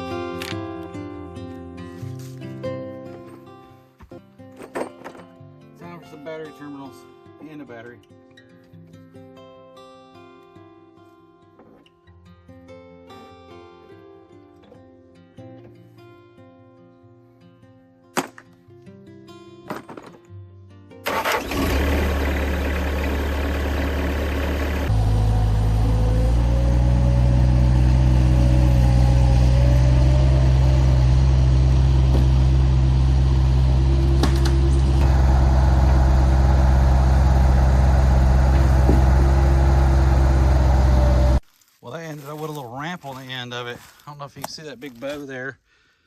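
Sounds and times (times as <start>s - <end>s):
sawmill engine running: 21.1s - 41.4s.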